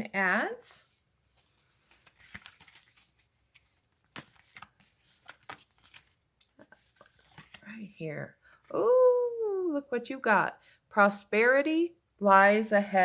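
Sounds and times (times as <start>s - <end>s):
cards shuffling and rustling: 1.2s - 7.8s.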